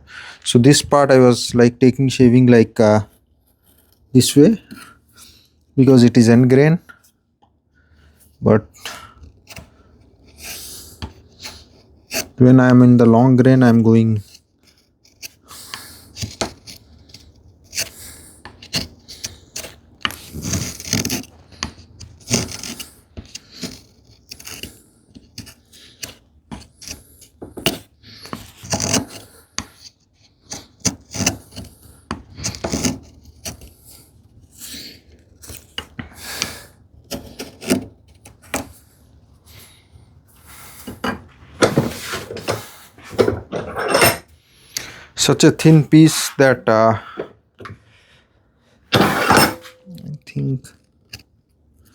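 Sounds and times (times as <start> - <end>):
hand tool scraping wood: 8.4 - 39.7, 40.4 - 44.3, 45.2 - 47.4, 48.9 - 51.9.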